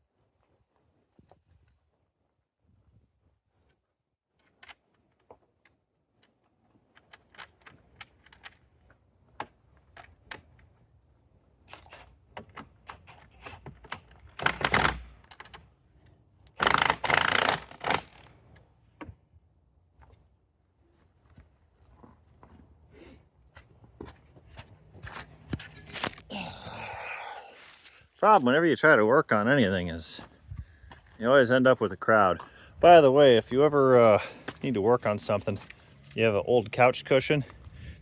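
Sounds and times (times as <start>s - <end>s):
rasping bursts: 16.6s - 18.4s.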